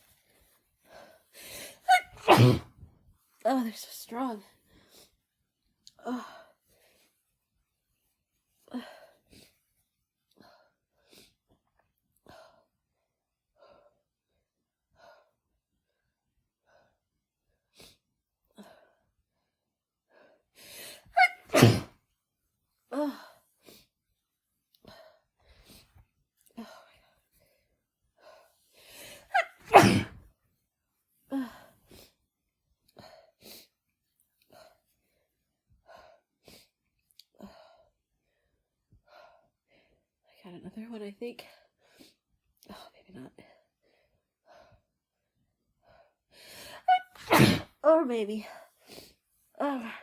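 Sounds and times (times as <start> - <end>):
woman sneezing: 1.9 - 2.7, 21.2 - 21.9, 29.3 - 30.2, 46.9 - 47.8.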